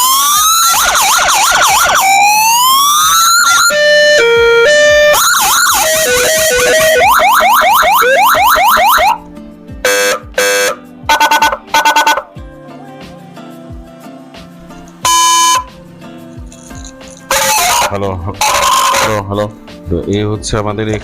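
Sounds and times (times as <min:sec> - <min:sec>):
electronic siren tones: 0:00.0 - 0:09.2, 0:09.8 - 0:12.3, 0:15.0 - 0:15.7, 0:17.3 - 0:19.2
rapid electronic pulses: 0:05.2 - 0:08.6
short horn blasts: 0:09.8 - 0:12.3, 0:15.0 - 0:15.7, 0:17.3 - 0:19.3.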